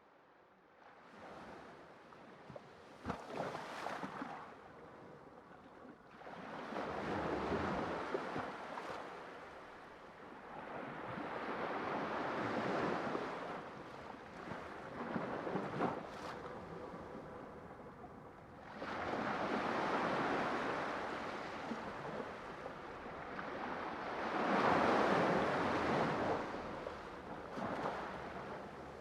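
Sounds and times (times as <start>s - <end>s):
waves breaking with crackling splash: 18.7s - 29.0s.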